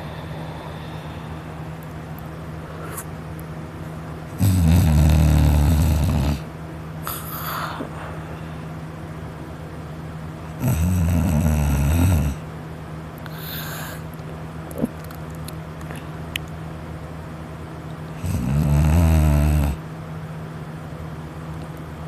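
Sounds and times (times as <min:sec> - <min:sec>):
soft breath: 0:00.0 - 0:01.7, 0:07.1 - 0:08.7, 0:13.3 - 0:14.1
person snoring: 0:04.4 - 0:08.1, 0:10.6 - 0:12.4, 0:18.2 - 0:19.8.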